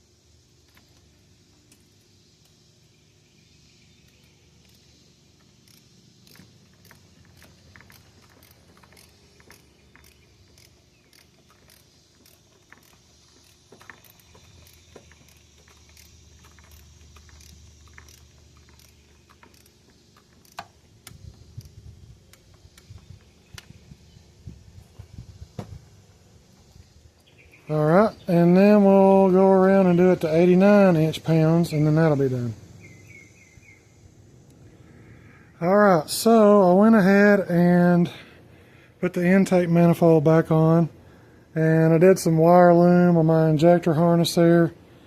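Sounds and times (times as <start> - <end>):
torque wrench ratcheting: 4.0 - 23.8
knocks and handling thuds: 24.9 - 25.9.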